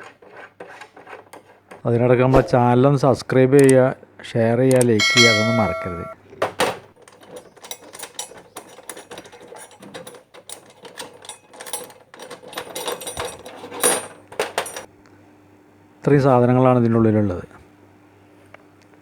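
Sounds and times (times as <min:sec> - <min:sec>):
screws and plastic parts rattling: 0:00.0 - 0:02.0, 0:06.4 - 0:14.9.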